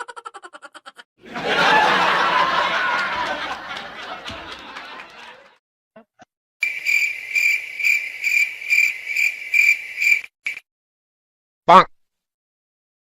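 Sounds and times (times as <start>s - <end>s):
crickets chirping: 6.6s - 10.6s.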